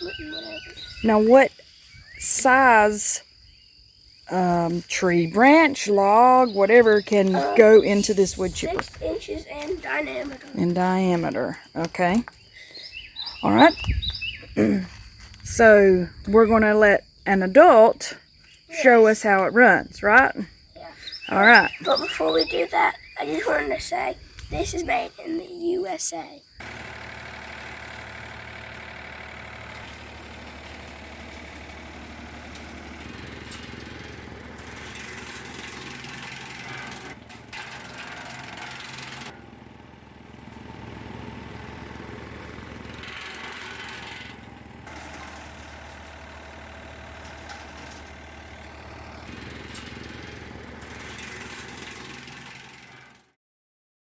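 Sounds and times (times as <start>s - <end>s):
tractor engine running: 0.0s - 3.2s, 4.3s - 16.9s, 26.6s - 53.3s
wood chipper: 26.6s - 53.3s.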